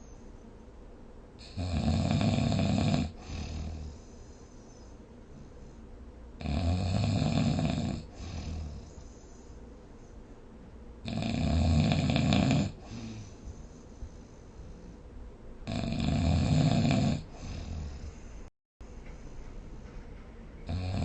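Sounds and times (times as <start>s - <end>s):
person snoring: 1.4s - 4.2s, 6.4s - 9.2s, 11.0s - 13.7s, 15.6s - 18.3s, 20.7s - 21.0s.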